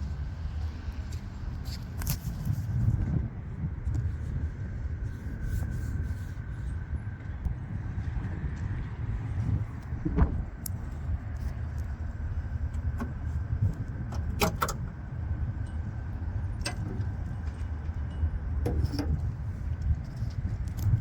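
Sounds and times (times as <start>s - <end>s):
steady low rumble: 0.0s - 21.0s
metallic clicks of car hood: 14.0s - 14.9s, 16.6s - 17.2s, 18.6s - 19.3s.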